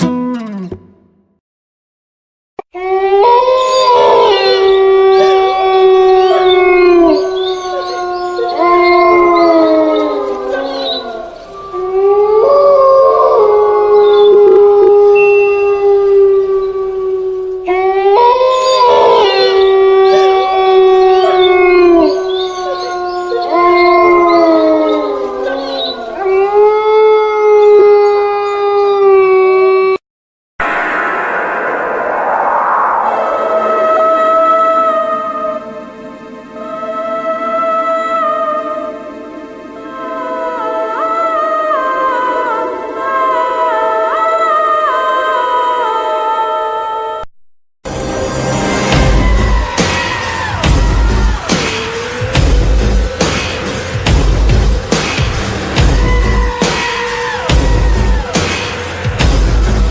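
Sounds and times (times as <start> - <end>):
dog howling: 2.8 - 30.0, 49.0 - 55.0, 55.8 - 59.1.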